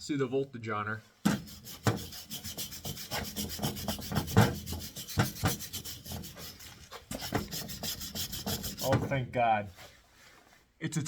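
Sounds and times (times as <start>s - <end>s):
scrubbing strokes: 1.4s - 8.9s.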